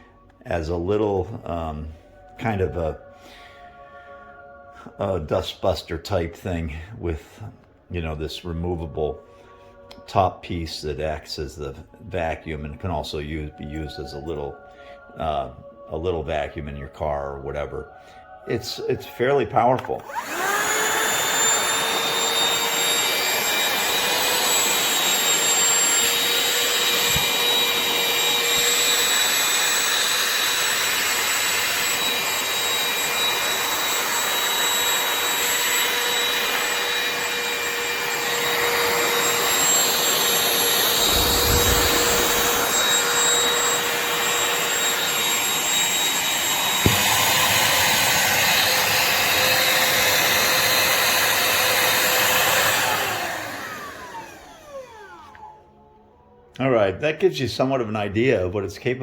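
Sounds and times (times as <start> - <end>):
vacuum motor whine: 19.9 - 56.0
low rumble: 40.9 - 43.2.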